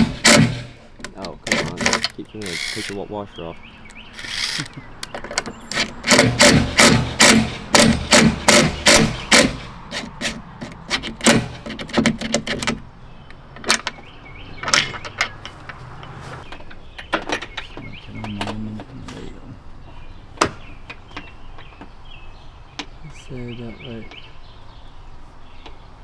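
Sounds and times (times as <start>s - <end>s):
metal latch clicking: 0.0s - 17.8s
light clicks and knocks: 0.3s - 8.6s, 9.3s - 19.2s.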